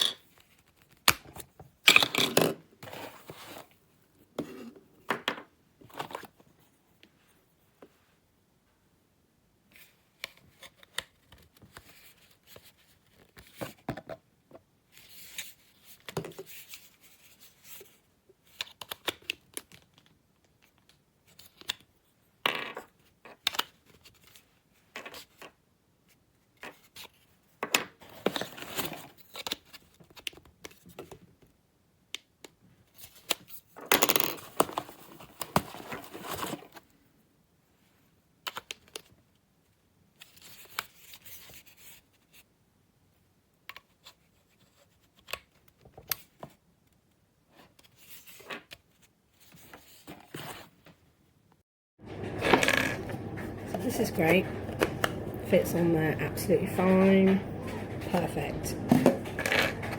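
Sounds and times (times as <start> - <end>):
plastic parts scraping: 52.0 - 59.9.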